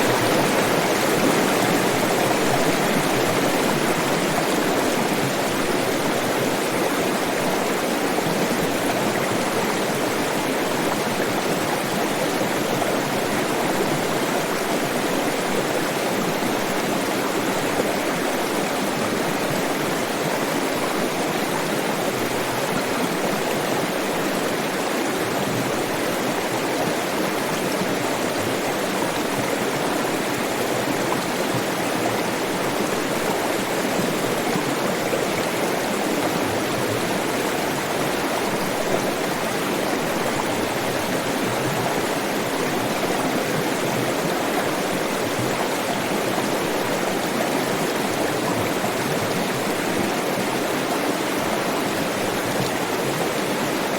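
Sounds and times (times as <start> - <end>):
stream water rushing: 0.0 - 53.9.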